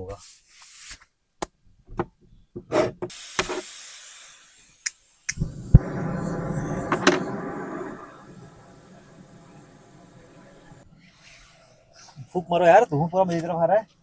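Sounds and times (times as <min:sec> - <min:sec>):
short hiss: 0:03.1 - 0:08.1.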